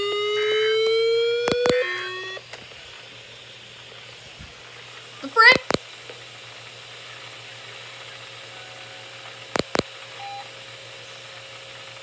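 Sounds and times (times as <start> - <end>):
static hiss: 1.5 - 1.9, 3.8 - 6.0, 9.5 - 9.9
sharp clicks: 1.5 - 2.6, 5.5 - 5.8, 9.6 - 9.9.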